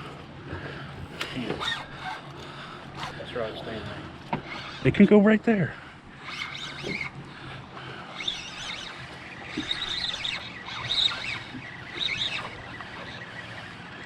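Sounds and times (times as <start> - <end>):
birds chirping: 0.1 - 14.0.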